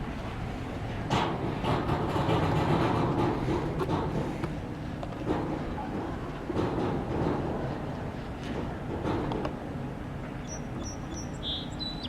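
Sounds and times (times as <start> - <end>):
boat engine rumbling: 0.0 - 12.0.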